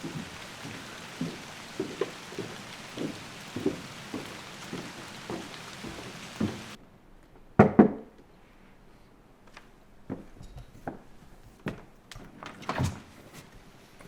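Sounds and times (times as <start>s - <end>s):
faint scattered taps: 0.0s - 6.8s
rain hiss: 0.0s - 6.8s.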